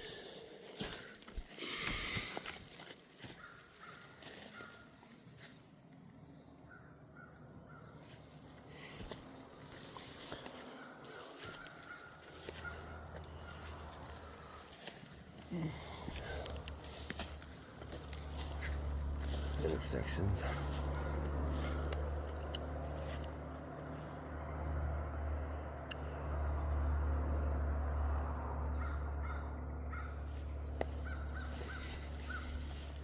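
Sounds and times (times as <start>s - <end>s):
distant crows cawing: 3.2s - 5.0s, 6.7s - 8.2s, 9.4s - 23.2s, 28.6s - 33.0s.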